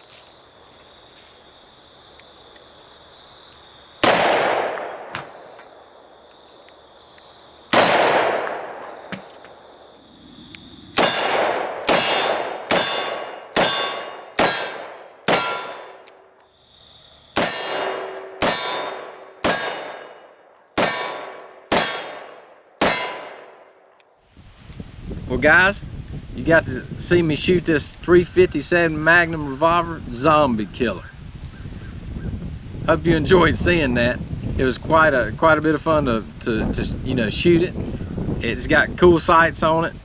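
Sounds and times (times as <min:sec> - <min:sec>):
revolver gunshots: 0:04.0 - 0:05.5, 0:07.7 - 0:09.1, 0:11.0 - 0:16.0, 0:20.8 - 0:23.7
steel plate clanging: 0:11.0 - 0:16.0, 0:17.4 - 0:20.2, 0:20.8 - 0:23.6.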